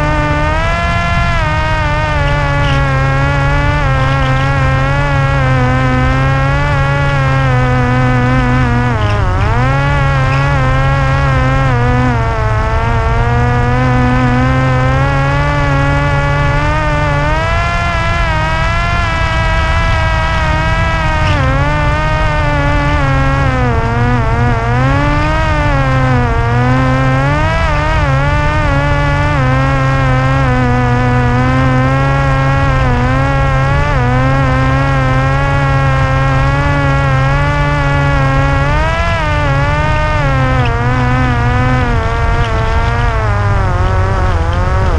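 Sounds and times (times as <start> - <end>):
drone propeller buzzing: 0.0 - 44.9
low rumble: 0.0 - 44.9.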